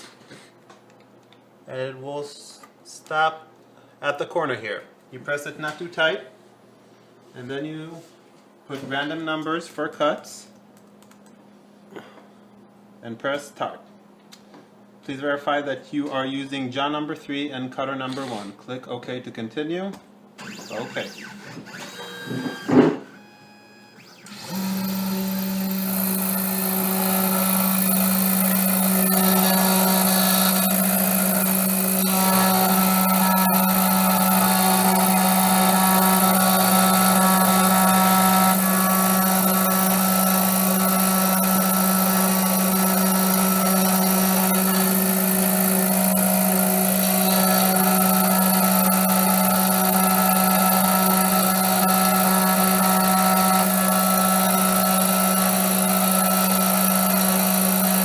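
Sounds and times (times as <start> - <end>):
key-cutting machine humming: 24.2 - 58.0.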